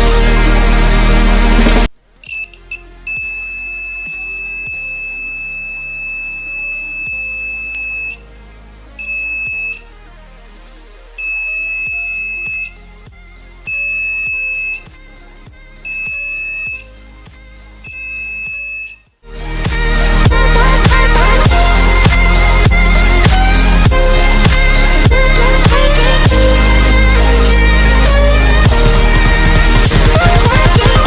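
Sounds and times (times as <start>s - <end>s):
high-pitched alarm buzzer: 2.3s - 8.2s, 11.2s - 12.8s, 13.7s - 14.9s, 15.8s - 16.9s, 17.9s - 19.0s.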